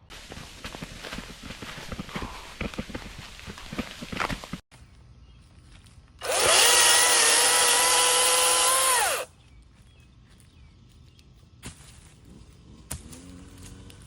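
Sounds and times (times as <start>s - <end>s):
electric chainsaw whining: 6.2s - 9.3s.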